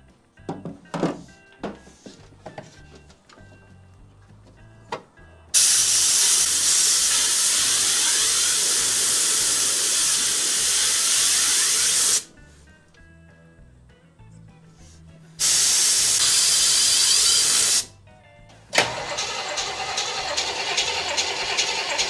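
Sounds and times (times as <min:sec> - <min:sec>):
pressurized air hiss: 0:05.6 - 0:12.3, 0:15.4 - 0:17.9.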